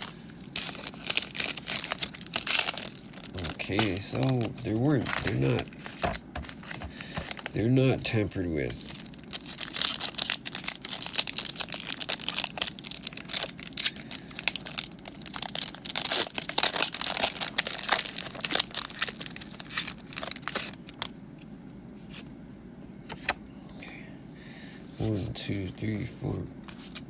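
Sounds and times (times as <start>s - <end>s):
foil wrapper crinkling and tearing: 0.0s - 21.2s.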